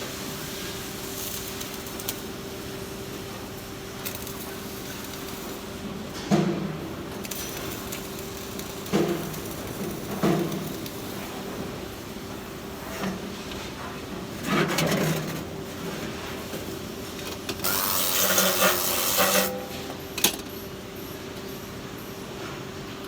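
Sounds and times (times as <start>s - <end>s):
welding arc hissing and crackling: 0.0s - 13.6s, 16.4s - 19.6s.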